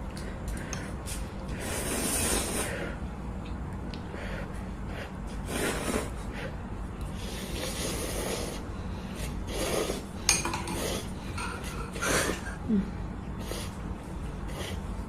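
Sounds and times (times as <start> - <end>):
cutlery scraping dishes: 10.2 - 12.4
cutlery clink: 10.3 - 11.9.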